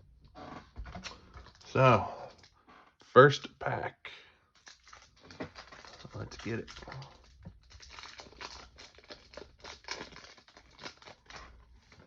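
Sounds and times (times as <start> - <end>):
foil wrapper tearing and crinkling: 4.6 - 12.0.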